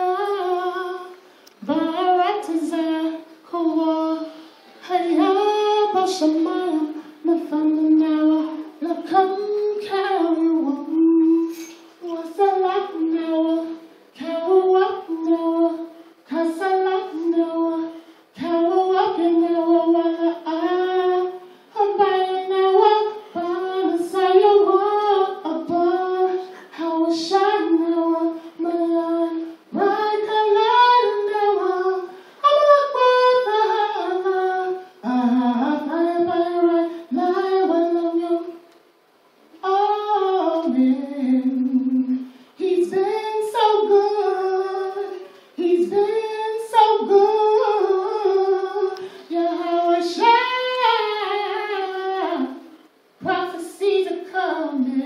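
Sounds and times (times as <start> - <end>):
woman singing unaccompanied: 0.0 - 38.8, 39.6 - 55.0
singer breathing: 1.2 - 1.6, 4.3 - 4.8, 17.9 - 18.3, 32.1 - 32.4, 42.2 - 42.6, 49.0 - 49.3.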